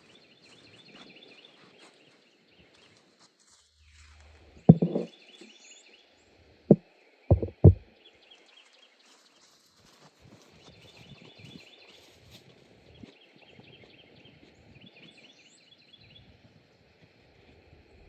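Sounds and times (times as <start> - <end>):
sharp knocks: 4.7 - 5.1, 7.3 - 7.8.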